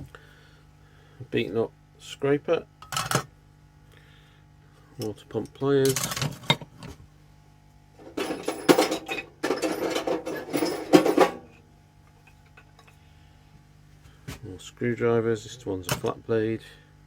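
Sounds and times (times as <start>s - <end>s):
metal hand tools clinking: 8.0s - 11.6s.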